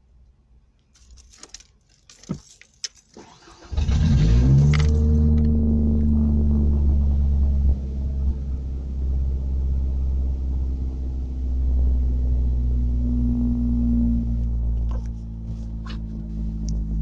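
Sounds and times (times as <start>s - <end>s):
truck engine running: 3.5s - 17.0s.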